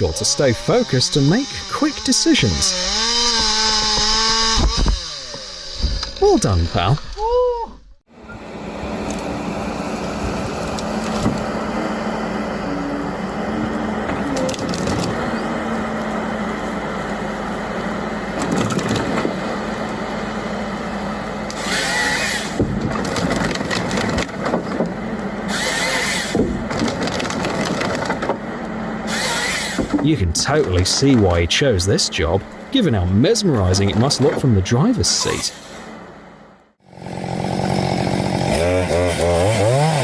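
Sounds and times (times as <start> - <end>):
machine engine humming: 0.0 - 7.2, 8.1 - 40.0
wood cracking and splintering: 14.3 - 15.4, 18.3 - 19.5, 21.5 - 31.4.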